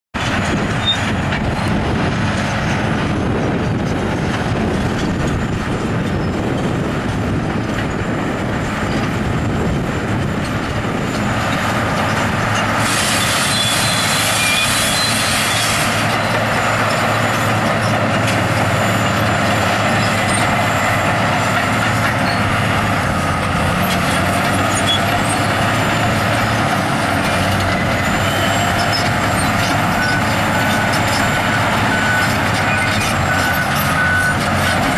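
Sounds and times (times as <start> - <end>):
heavy diesel machinery running: 0.2 - 34.9
hiss: 12.8 - 16.0.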